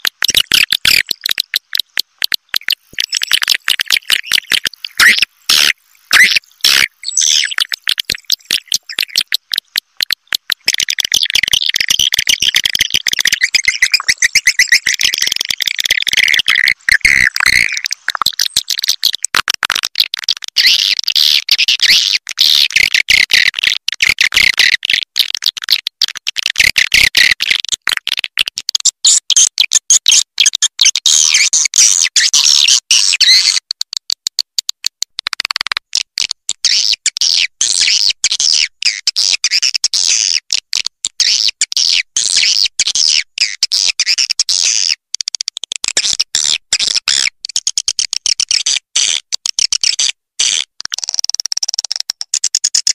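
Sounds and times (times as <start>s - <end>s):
swiftlets twittering: 0.4s - 19.0s.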